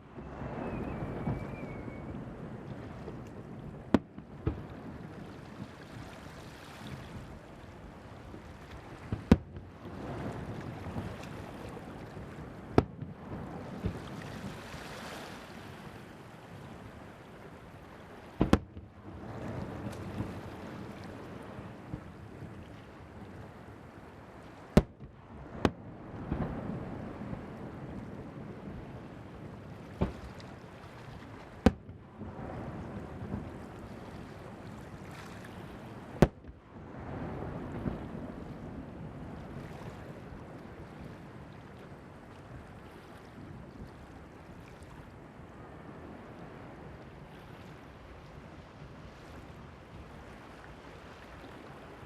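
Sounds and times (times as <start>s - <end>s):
surf: 0.0s - 52.0s
wind: 0.0s - 52.0s
fireworks bursting with echo: 18.4s - 19.0s, 24.7s - 27.5s, 31.6s - 32.0s, 36.1s - 36.6s.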